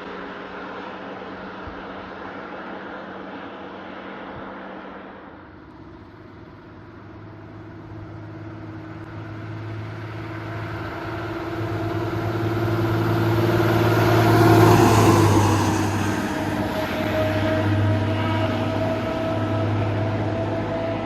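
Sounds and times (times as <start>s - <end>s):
vehicle engine passing: 5.7s - 21.0s.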